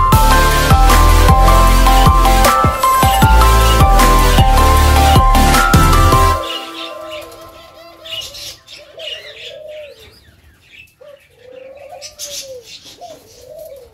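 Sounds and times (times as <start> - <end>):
doves cooing: 6.4 - 10.3, 11.0 - 13.9
small birds chirping: 6.4 - 13.9.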